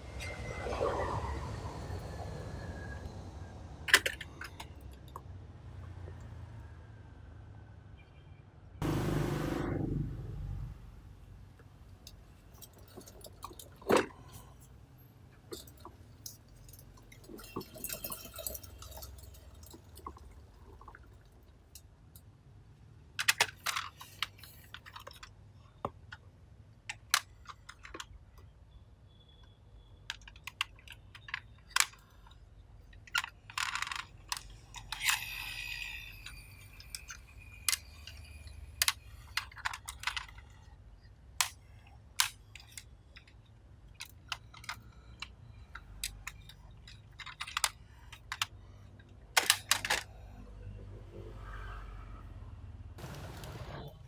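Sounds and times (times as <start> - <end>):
plastic toy vehicles clattering: 3.8 - 5.3, 12.1 - 14.7, 15.4 - 22.3, 23.1 - 28.5, 29.3 - 50.3.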